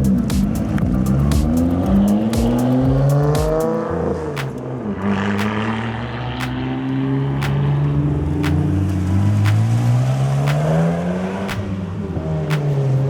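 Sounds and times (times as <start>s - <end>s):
sharp exhaust cracks: 0.0s - 6.8s
car engine accelerating: 0.0s - 13.0s.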